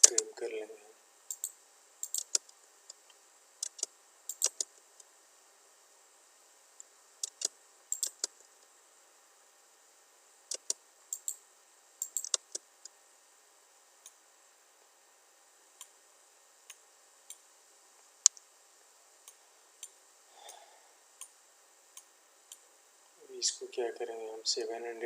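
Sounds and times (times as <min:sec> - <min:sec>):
mouse and keyboard clicks: 0:01.3 - 0:03.0, 0:03.6 - 0:05.1, 0:07.2 - 0:08.4, 0:10.5 - 0:11.4, 0:12.0 - 0:12.6.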